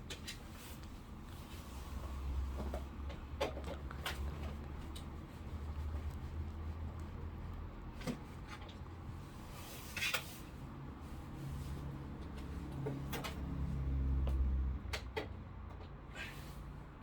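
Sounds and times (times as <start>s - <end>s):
handling clicks and knocks: 2.5s - 5.1s.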